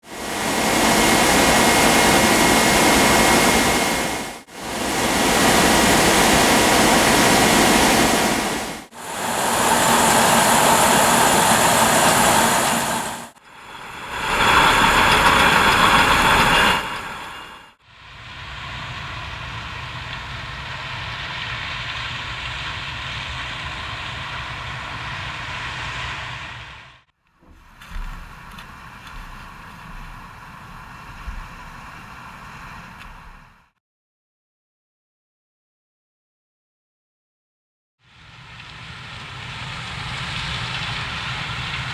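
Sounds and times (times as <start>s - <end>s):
combine harvester running: 0.1s - 17.6s.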